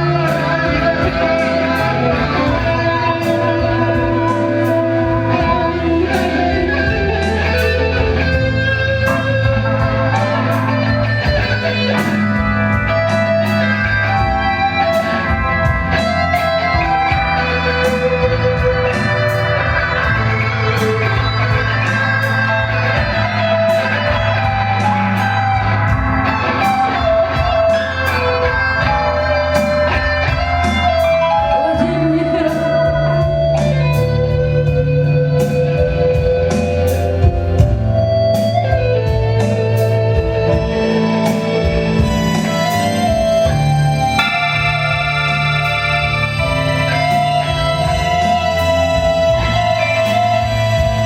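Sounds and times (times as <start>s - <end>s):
guitar playing: 0.0s - 51.0s
keyboards: 0.0s - 51.0s
low held notes: 0.0s - 51.0s
percussive hits: 40.2s - 50.2s.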